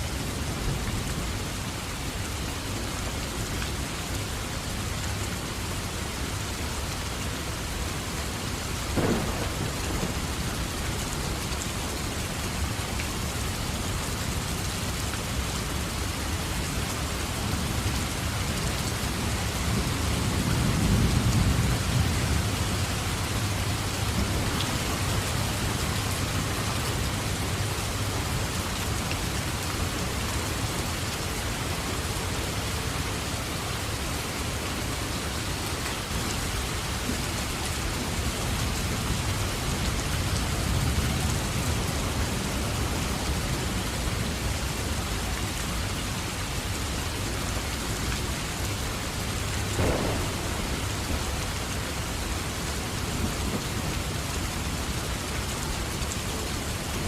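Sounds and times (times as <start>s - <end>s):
steady rain falling: 0.0s - 57.0s
low rolling thunder: 8.9s - 11.8s, 49.7s - 52.4s.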